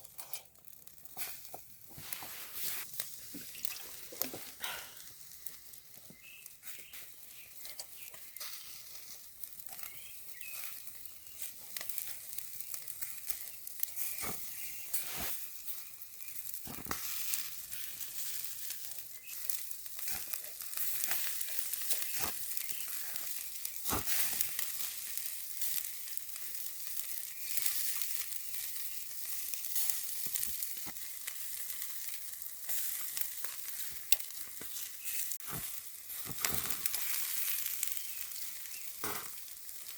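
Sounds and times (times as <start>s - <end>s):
charcoal fire crackling: 0.0s - 39.9s
meat sizzling on a grill: 0.0s - 39.9s.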